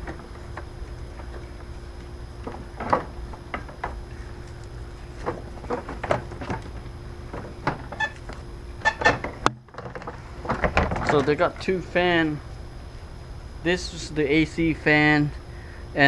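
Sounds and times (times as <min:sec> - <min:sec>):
knocks and clatter of parts: 0:02.4 - 0:11.4.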